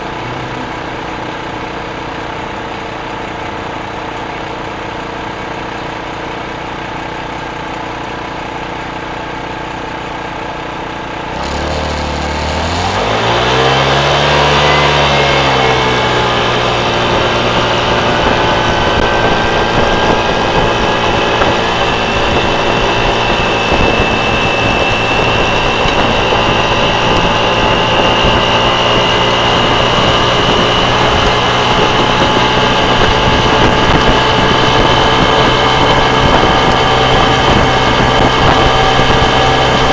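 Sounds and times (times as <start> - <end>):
motorcycle engine: 0.0 - 39.9
wind noise: 14.1 - 39.9.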